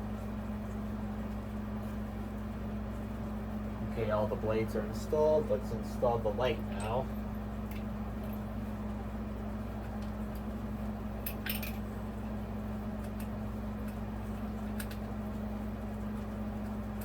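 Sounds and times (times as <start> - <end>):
steady low hum: 0.0 - 17.0
small parts clicking and clinking: 11.2 - 11.8, 14.7 - 15.1.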